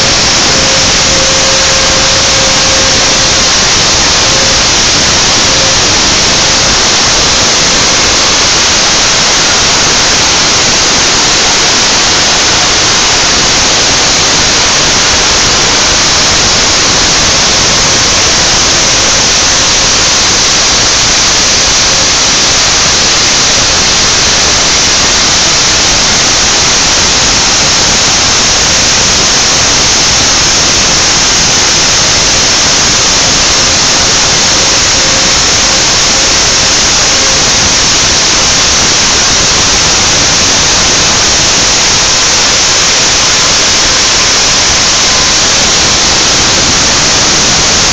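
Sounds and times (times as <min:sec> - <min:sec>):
router spindle hissing: 0:00.0 - 0:20.2.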